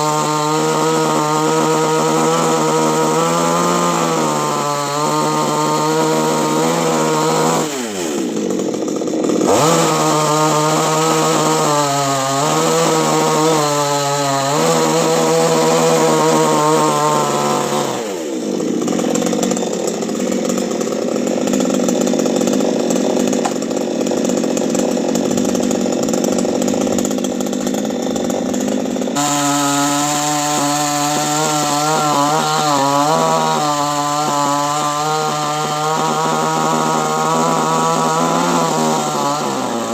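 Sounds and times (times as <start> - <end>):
chainsaw cutting tree: 0.0 - 39.9.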